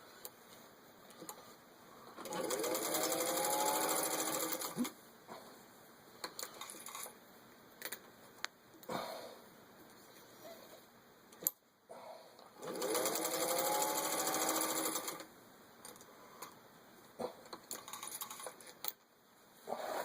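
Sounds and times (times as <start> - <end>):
sewing machine motor whining: 2.2 - 4.8, 12.6 - 15.3
sewing machine clicks: 12.6 - 15.3.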